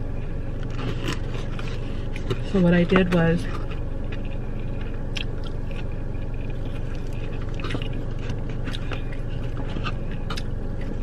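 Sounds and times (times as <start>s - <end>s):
person chewing food: 0.0s - 11.0s
car cabin hum: 0.1s - 11.0s.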